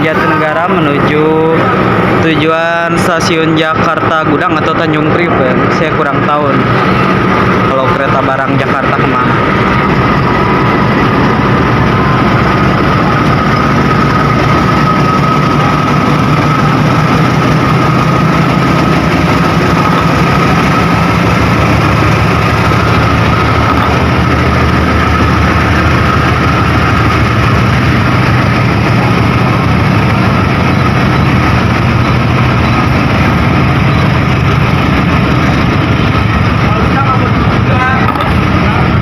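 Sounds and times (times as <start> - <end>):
diesel locomotive engine running: 0.0 - 39.0
thin high whine: 0.0 - 39.0.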